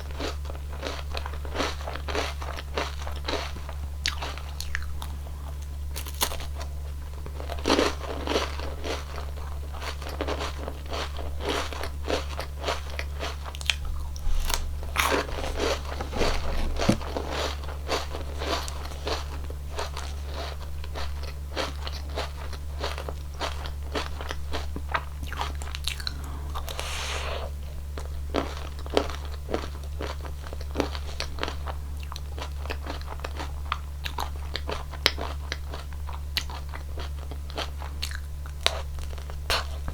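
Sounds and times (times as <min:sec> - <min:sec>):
crunching of wafer cone being bitten: 0:00.1 - 0:06.7, 0:07.4 - 0:27.4.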